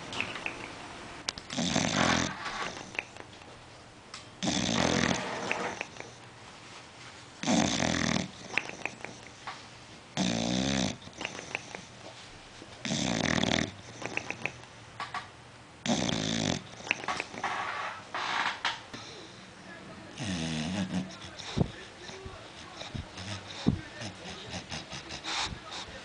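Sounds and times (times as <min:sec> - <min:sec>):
dog snoring: 0:01.5 - 0:03.2, 0:04.4 - 0:06.2, 0:07.4 - 0:09.3, 0:10.2 - 0:11.9, 0:12.8 - 0:14.6, 0:15.8 - 0:18.0, 0:20.2 - 0:26.0.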